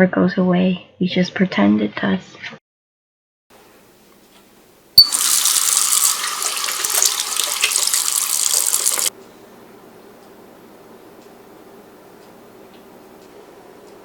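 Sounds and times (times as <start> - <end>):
tap running into a sink: 5.0 - 9.1.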